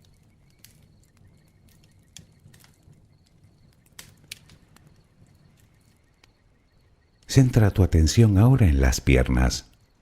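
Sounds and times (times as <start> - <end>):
bonfire pops and snaps: 0.0 - 7.4
low rumble of burning: 0.0 - 10.0.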